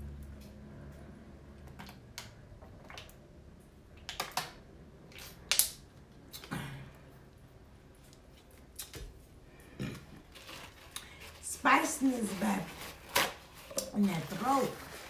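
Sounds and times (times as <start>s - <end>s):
person drinking water: 9.5s - 10.3s.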